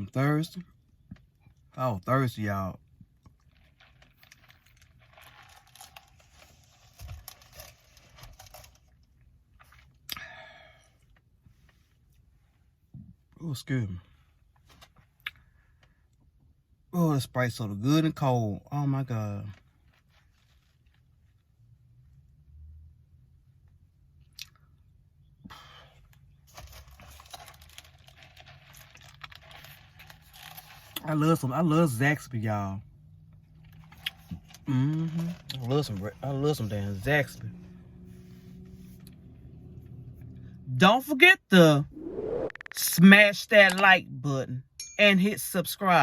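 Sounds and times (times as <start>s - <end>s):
food packaging crinkling: 3.3s - 10.0s, 26.5s - 31.0s.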